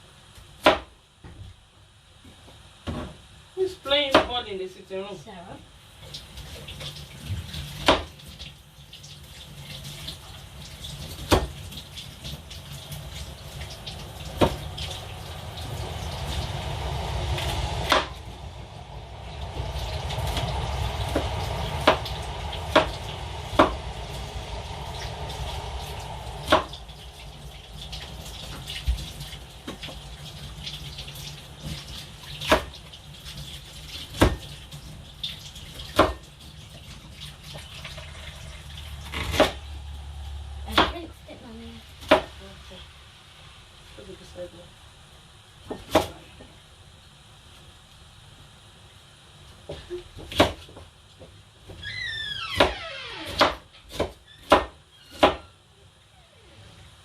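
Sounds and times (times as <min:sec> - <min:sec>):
water running into sink: 0:05.8 - 0:18.3, 0:19.4 - 0:42.3.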